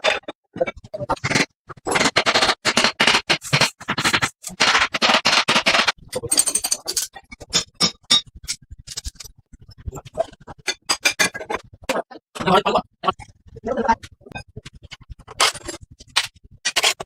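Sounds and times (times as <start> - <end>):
scraping and rubbing: 0.0 - 7.6, 13.4 - 17.0.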